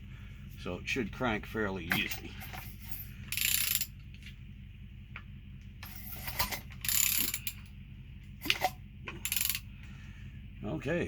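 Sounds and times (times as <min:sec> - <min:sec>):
ratchet wrench clicking: 0:03.3 - 0:03.9, 0:05.8 - 0:07.7, 0:08.5 - 0:09.7.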